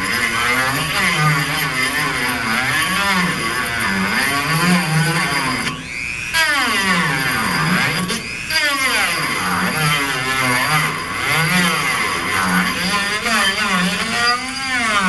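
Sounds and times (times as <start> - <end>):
rotary tool grinding metal: 0.0 - 15.0.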